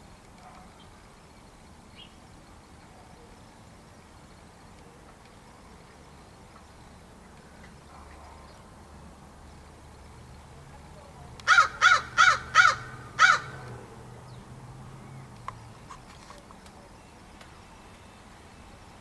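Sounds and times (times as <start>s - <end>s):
crow cawing: 11.5s - 13.7s.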